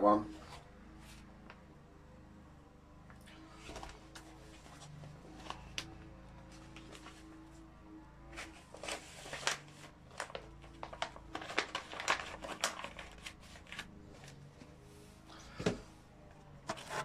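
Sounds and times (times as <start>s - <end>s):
faint low hum: 0.0s - 17.0s
objects rustling and clicking: 3.1s - 7.5s, 16.6s - 17.0s.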